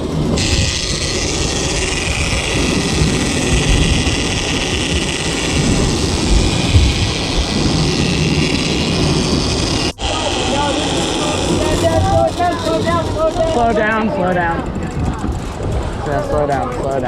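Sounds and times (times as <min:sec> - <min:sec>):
boat engine drone: 0:00.0 - 0:17.0.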